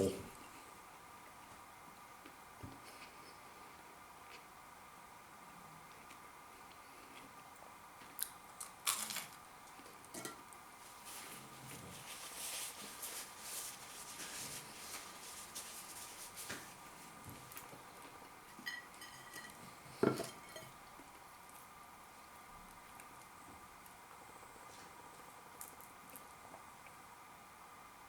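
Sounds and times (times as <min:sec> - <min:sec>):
plate and cutlery clinking: 0:10.1 - 0:10.4, 0:18.5 - 0:20.8.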